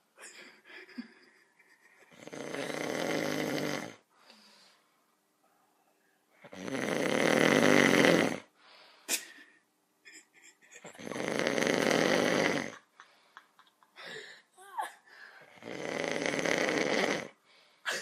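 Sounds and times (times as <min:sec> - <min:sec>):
person snoring loudly: 0:02.1 - 0:04.0, 0:06.5 - 0:08.5, 0:11.0 - 0:12.8, 0:15.5 - 0:17.4.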